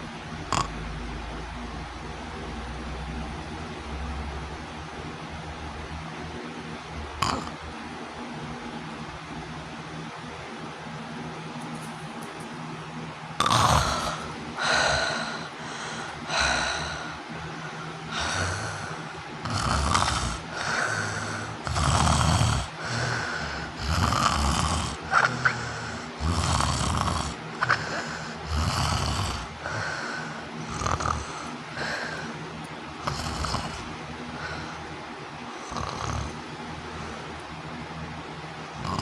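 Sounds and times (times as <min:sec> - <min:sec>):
woman snoring loudly: 0:00.4 - 0:00.9, 0:07.2 - 0:07.6, 0:13.4 - 0:17.2, 0:18.1 - 0:32.4, 0:33.0 - 0:34.9, 0:35.6 - 0:36.4, 0:38.8 - 0:39.0.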